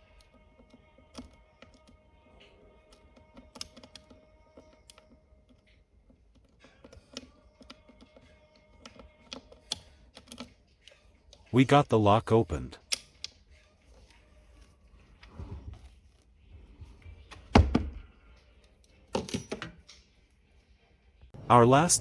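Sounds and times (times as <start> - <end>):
metallic lock pick clicks and scrapes: 2.8 - 11.5.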